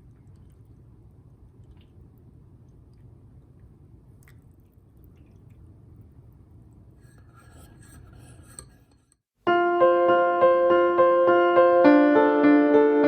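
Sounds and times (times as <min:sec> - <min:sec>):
background piano music: 0:09.4 - 0:13.0.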